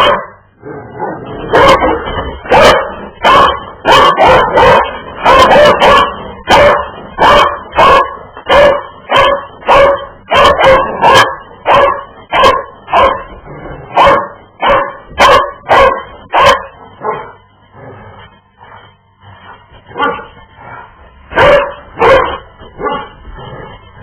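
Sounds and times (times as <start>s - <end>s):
dog barking: 0.0s - 0.4s, 1.5s - 17.4s, 19.9s - 20.4s, 21.3s - 23.2s.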